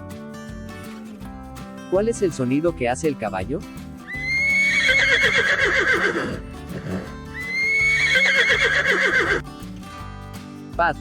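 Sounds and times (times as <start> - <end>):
horse neighing: 4.1 - 9.4.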